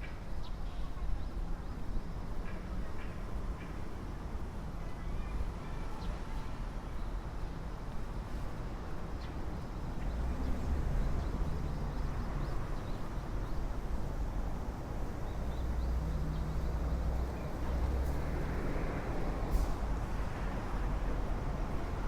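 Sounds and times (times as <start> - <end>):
passing vehicle hiss: 6.2 - 22.0.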